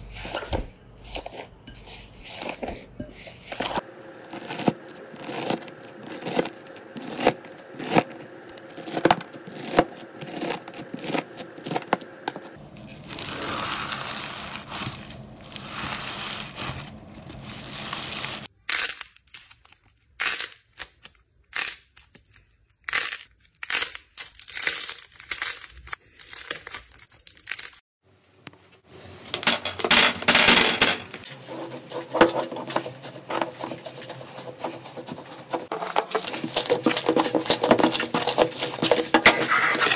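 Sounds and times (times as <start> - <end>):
slime squeezed crackling: 13.0 - 20.9.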